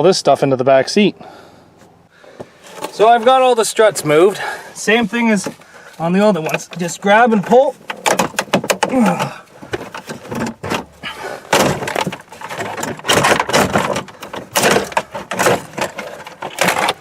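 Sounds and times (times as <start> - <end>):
plastic trim clicking and rattling: 7.4 - 10.9, 11.5 - 17.0.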